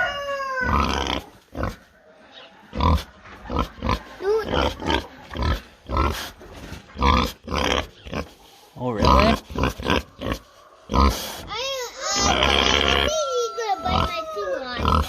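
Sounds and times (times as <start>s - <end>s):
rooster crowing: 0.0s - 1.0s, 11.8s - 14.8s
pig grunting: 0.6s - 11.5s, 12.1s - 13.2s, 13.8s - 15.0s.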